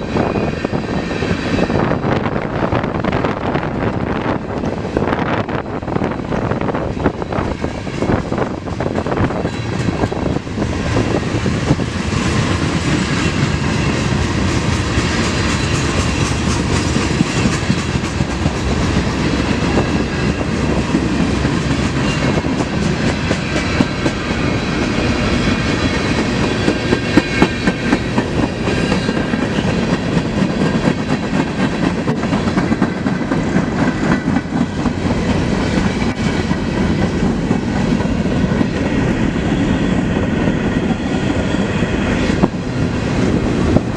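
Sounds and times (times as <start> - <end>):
freight train rumble: 0.0 - 43.9
wheels clacking over rail joints: 7.8 - 39.7.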